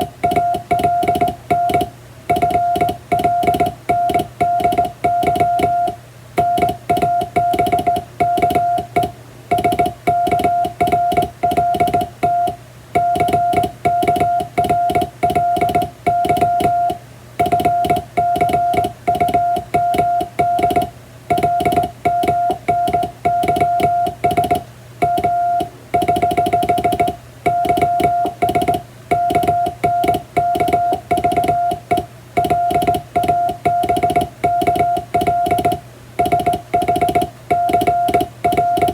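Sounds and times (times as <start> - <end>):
morse code beeps: 0.0 - 38.9
telegraph key clicking: 13.2 - 38.9.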